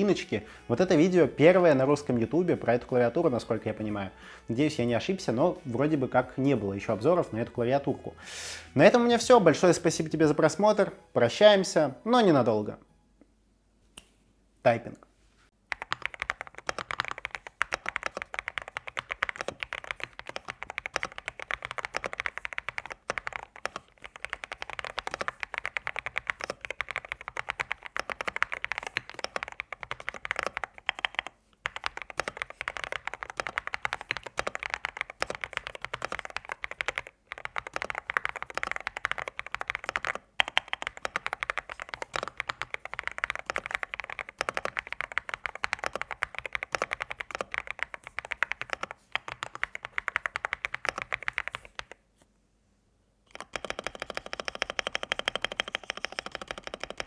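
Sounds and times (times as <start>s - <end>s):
mechanical keyboard typing: 15.7s - 52.0s, 53.3s - 57.0s.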